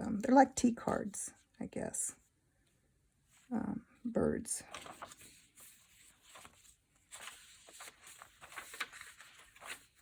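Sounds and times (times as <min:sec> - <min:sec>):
paper pages rustling: 0:04.6 - 0:10.0.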